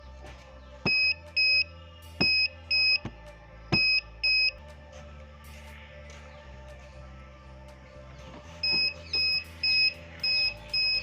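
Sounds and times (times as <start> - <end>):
piezo buzzer beeps: 0.9 - 3.1, 3.7 - 4.6, 8.6 - 11.0.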